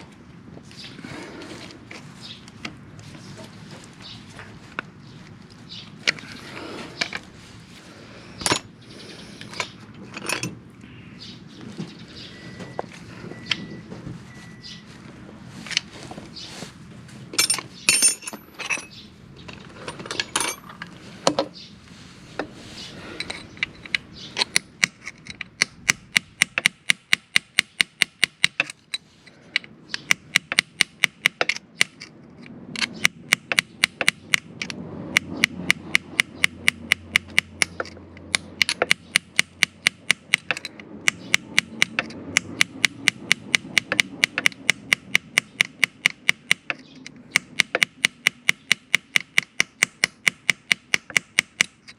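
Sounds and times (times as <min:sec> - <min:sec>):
tools clanking: 0:05.7 - 0:07.4, 0:08.4 - 0:10.8, 0:17.3 - 0:21.7, 0:22.3 - 0:25.7, 0:40.3 - 0:41.2
hammer tapping on metal: 0:30.0 - 0:32.0, 0:35.1 - 0:51.9.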